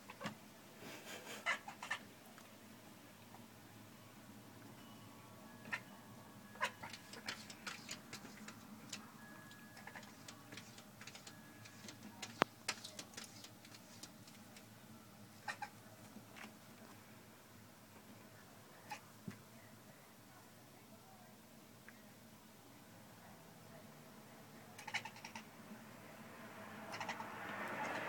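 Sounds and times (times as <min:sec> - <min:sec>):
cat chattering: 0:01.3 - 0:02.1, 0:05.6 - 0:05.9, 0:06.5 - 0:09.0, 0:09.8 - 0:14.1, 0:15.3 - 0:15.7, 0:24.8 - 0:25.5, 0:26.9 - 0:27.4.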